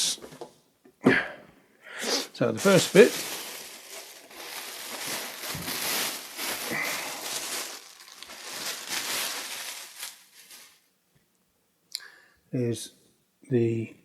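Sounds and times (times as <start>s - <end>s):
packaging rustling and crinkling: 2.5s - 10.9s.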